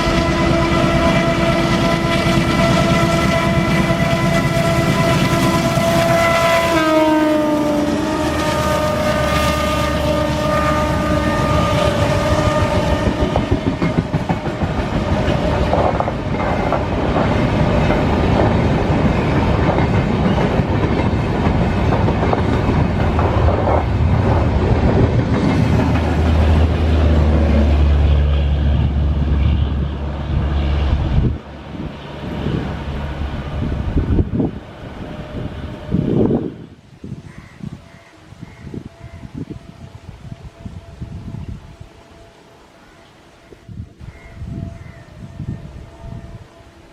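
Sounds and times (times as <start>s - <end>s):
locomotive turbocharger whistling: 0.0s - 13.8s, 27.3s - 31.3s
train coaches clattering over rails: 11.3s - 29.4s.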